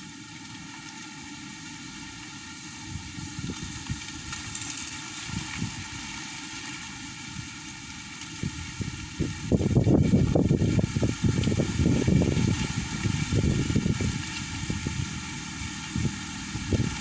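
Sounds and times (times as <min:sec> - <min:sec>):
steady hiss: 0:00.9 - 0:17.0
wind buffeting microphone: 0:02.8 - 0:04.4, 0:05.3 - 0:06.1, 0:08.4 - 0:17.0.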